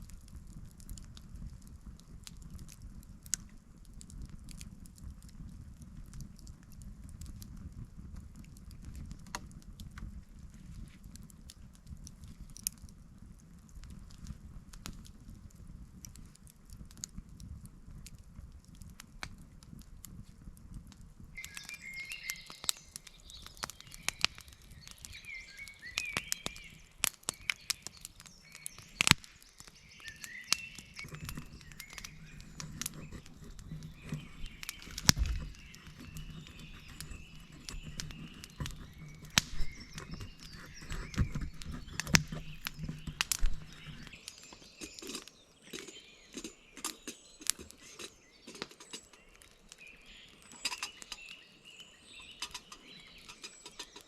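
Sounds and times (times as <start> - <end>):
sharp clicks and cracks: 0.0 - 51.4, 52.2 - 54.0
birds chirping: 21.4 - 54.0.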